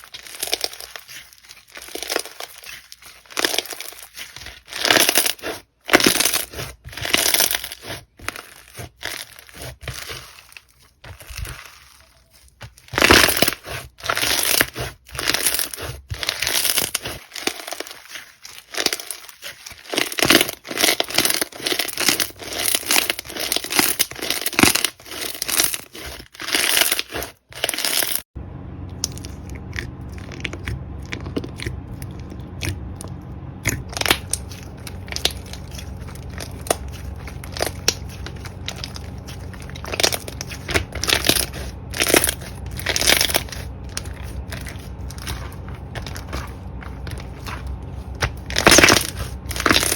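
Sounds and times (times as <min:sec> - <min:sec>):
slime popping and crackling: 0:00.0 - 0:28.2, 0:28.9 - 0:49.9
steady low hum: 0:28.4 - 0:49.9.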